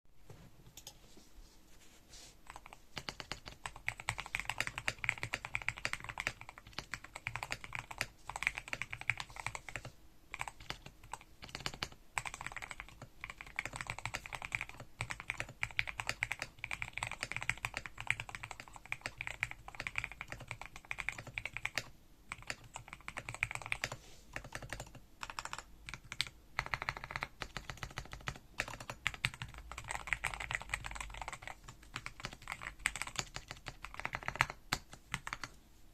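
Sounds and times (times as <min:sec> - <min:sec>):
typing on mechanical keyboard: 0:02.5 - 0:35.6.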